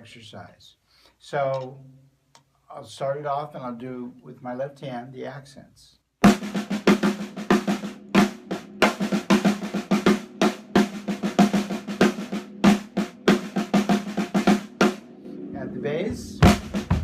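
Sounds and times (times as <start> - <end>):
snare drum playing: 6.2 - 15.1, 16.4 - 17.0.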